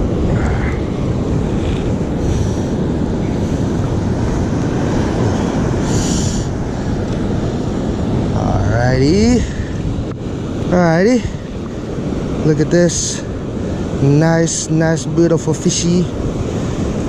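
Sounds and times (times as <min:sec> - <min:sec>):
ocean surf breaking: 0:00.0 - 0:17.0
wind buffeting microphone: 0:00.0 - 0:17.0.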